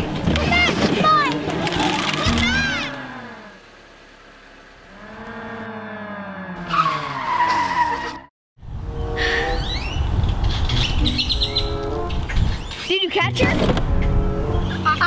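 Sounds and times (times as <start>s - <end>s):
car engine pulling away: 0.0s - 7.9s
tyre screech: 6.6s - 8.3s.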